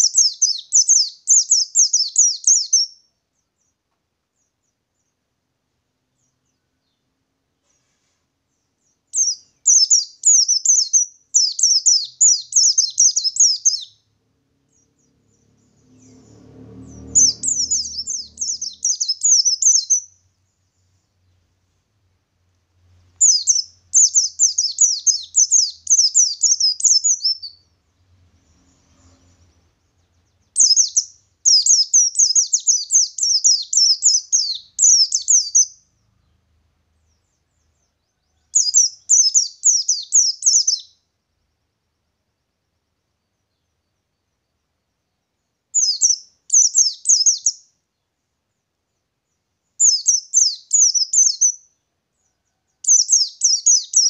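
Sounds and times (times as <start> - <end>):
bird singing quick high chirps: 0.0 - 3.0, 8.9 - 14.0, 14.7 - 20.3, 23.2 - 27.7, 28.4 - 35.9, 38.6 - 41.0, 45.8 - 47.6, 49.8 - 51.6, 52.9 - 54.0.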